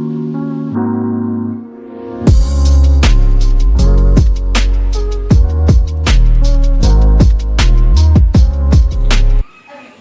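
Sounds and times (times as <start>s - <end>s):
electronic music with heavy bass: 2.2s - 9.5s.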